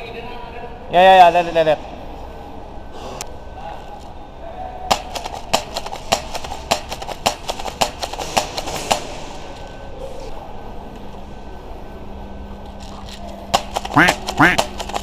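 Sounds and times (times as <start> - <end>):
steady background hum: 0.0 - 15.0
airsoft gun shots: 4.9 - 9.2, 13.5 - 15.0.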